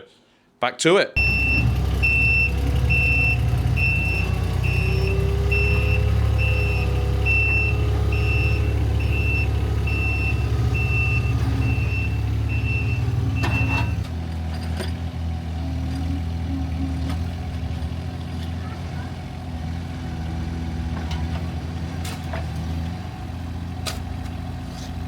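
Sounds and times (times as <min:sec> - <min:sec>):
reversing alarm beeping: 0:01.2 - 0:14.1
diesel engine running: 0:01.2 - 0:25.0.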